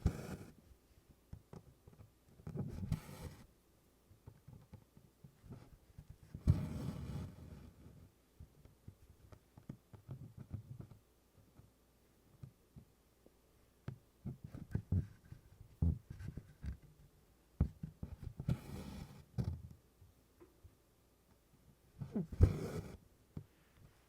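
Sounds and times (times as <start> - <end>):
needle taps and scratches on fabric: 13.8 - 17.0, 17.6 - 19.6, 22.0 - 23.6.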